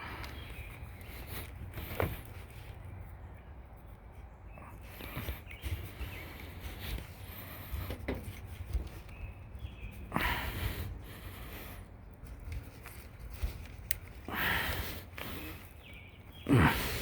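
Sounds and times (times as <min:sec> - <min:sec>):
faint rubbing and handling: 0:00.0 - 0:16.4
heavy exhales through nose: 0:10.1 - 0:11.9, 0:14.2 - 0:15.6, 0:16.4 - 0:17.0.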